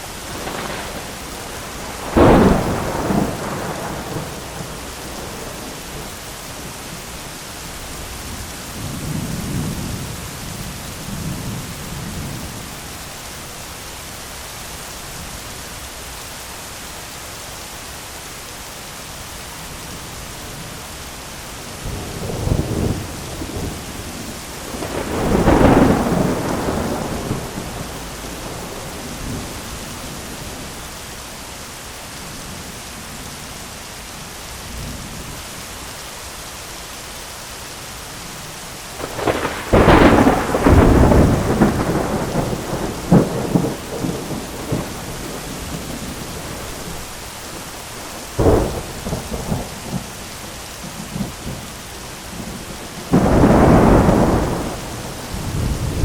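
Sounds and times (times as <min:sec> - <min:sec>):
thunder rumbling: 0:00.0 - 0:07.2, 0:21.7 - 0:31.0, 0:38.9 - 0:56.0
heavy rain on an umbrella: 0:00.0 - 0:56.0.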